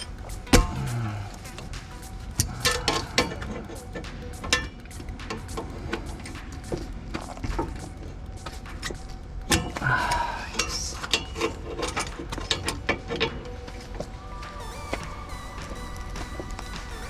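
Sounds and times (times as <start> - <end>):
loud ringing metal clank: 0.0 - 1.6.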